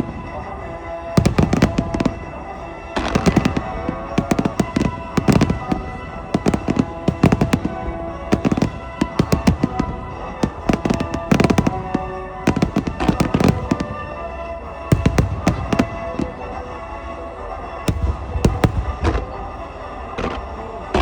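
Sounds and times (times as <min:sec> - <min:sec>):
music playing: 0:00.0 - 0:21.0
firework shells bursting: 0:01.2 - 0:02.3, 0:03.0 - 0:14.0.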